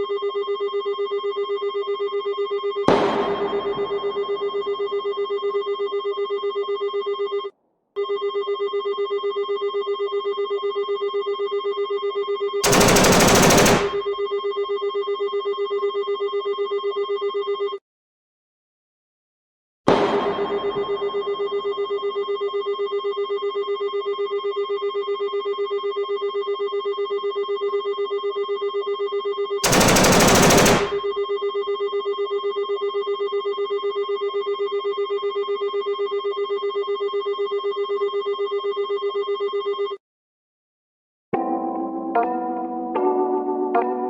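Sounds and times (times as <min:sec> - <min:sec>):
gunfire burst: 0:12.6 - 0:14.1, 0:29.6 - 0:31.1.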